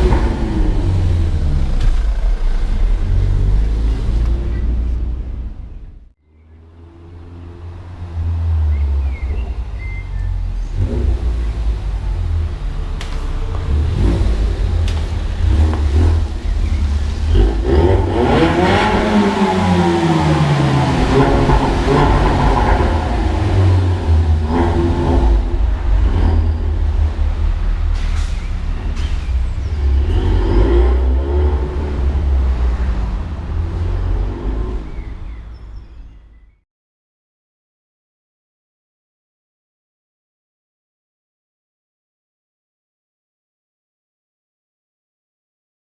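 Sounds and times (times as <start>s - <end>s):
car engine revving: 0.0s - 35.6s
road rumble: 0.0s - 36.6s.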